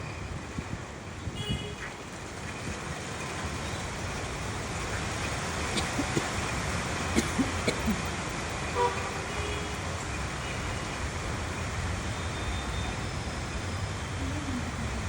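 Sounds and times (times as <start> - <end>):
strong wind buffeting microphone: 0.0 - 8.2.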